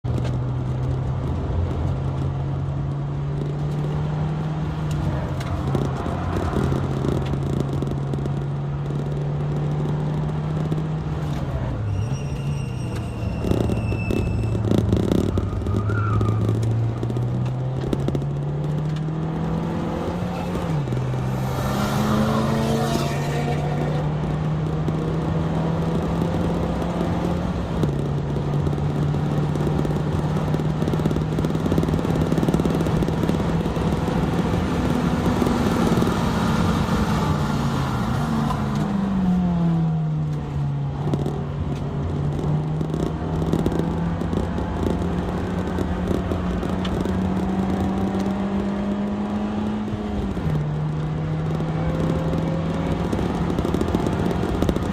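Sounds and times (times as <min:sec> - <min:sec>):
tyre noise: 0:00.0 - 0:54.9
car engine revving hard: 0:18.6 - 0:27.8.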